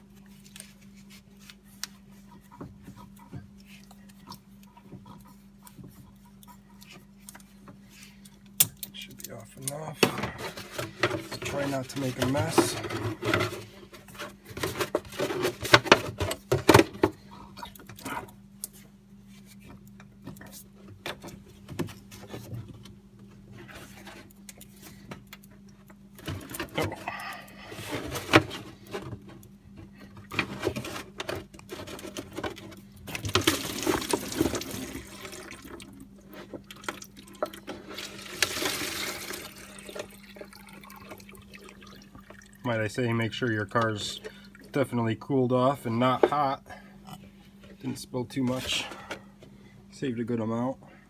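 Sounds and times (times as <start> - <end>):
hose and jug knocking and clattering: 10.0 - 17.1, 30.3 - 42.4
coolant pouring and splashing into jug: 33.1 - 42.8.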